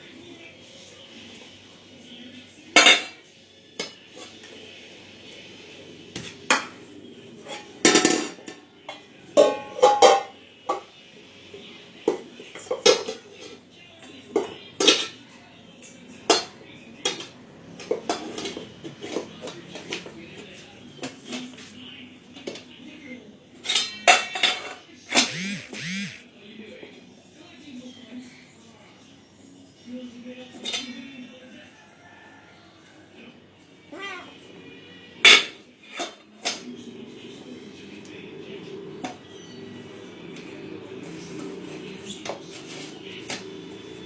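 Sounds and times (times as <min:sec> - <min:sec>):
dishes clattering and clinking: 0:06.1 - 0:11.0, 0:12.1 - 0:13.6, 0:16.3 - 0:20.0, 0:35.3 - 0:36.7.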